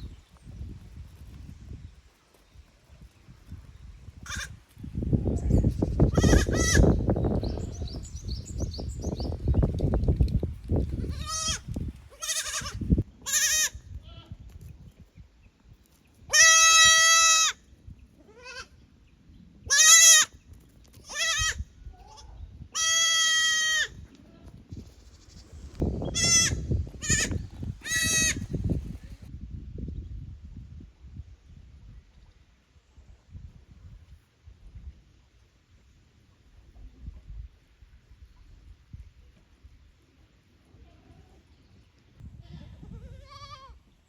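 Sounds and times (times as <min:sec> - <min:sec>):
goats bleating: 0:06.2 - 0:06.8, 0:11.0 - 0:14.3, 0:16.3 - 0:17.6, 0:22.8 - 0:23.9, 0:26.2 - 0:28.4.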